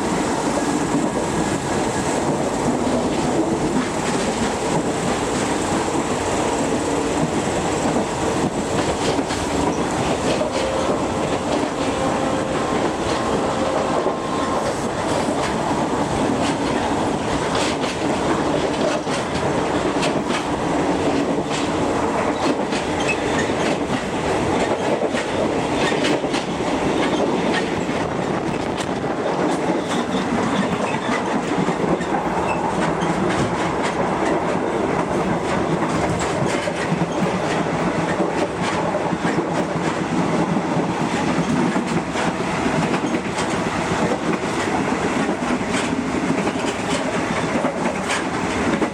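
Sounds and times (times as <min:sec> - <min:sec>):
track clicks and clacks: 0:00.0 - 0:48.9
train wheels rumbling on rail: 0:00.0 - 0:48.9.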